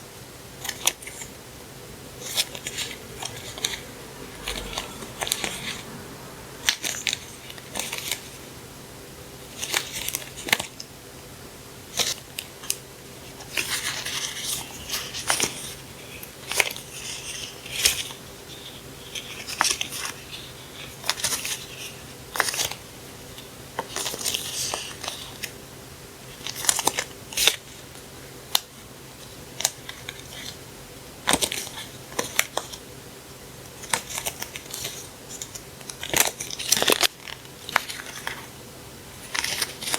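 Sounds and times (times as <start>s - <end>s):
paper and plastic rustling: 39.2s - 39.9s.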